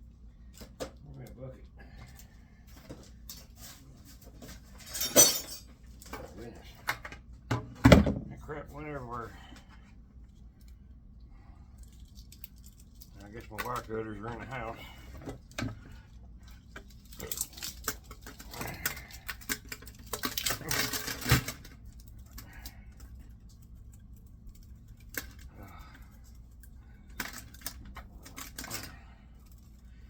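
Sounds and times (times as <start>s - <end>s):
metal tools clattering together: 4.4s - 6.3s, 17.2s - 21.6s.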